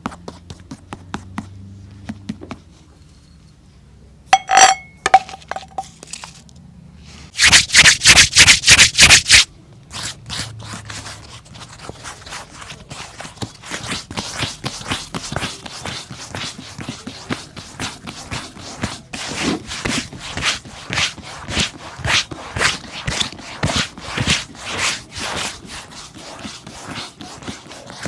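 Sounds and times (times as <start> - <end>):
ringing clink: 4.4 - 5.8
shoe brush strokes on leather: 7.3 - 9.5, 10.9 - 28.0.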